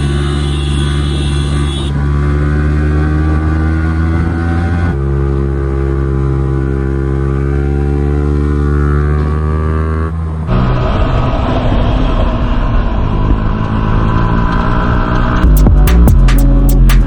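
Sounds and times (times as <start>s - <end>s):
motorcycle engine under load: 0.0s - 15.8s.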